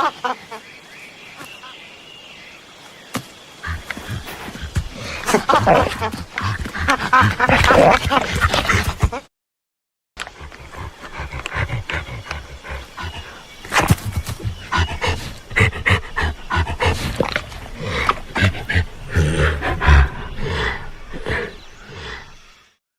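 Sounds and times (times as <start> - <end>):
creature grunts and growls: 3.6 - 9.2, 10.3 - 22.4.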